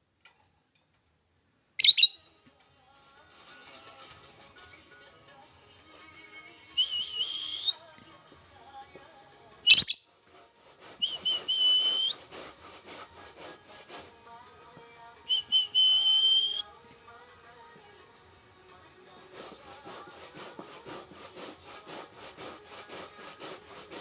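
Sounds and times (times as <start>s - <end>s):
bird whistling phrases: 1.8s - 2.2s, 9.7s - 10.1s
loud sharp bird squeak: 1.8s - 2.2s, 9.7s - 10.1s
rapid bird chattering: 9.7s - 10.1s.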